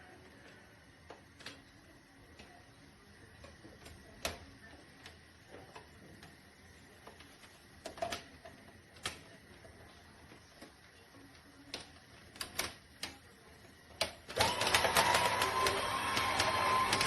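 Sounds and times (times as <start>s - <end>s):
juicer motor whining: 14.3s - 17.0s.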